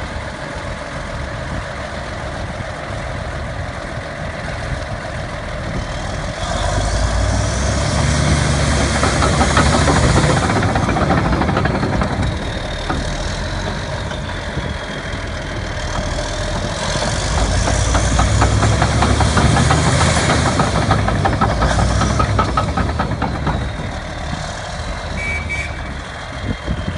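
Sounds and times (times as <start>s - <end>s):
bulldozer diesel engine running: 0.0s - 26.9s
rapid clatter: 6.0s - 25.1s.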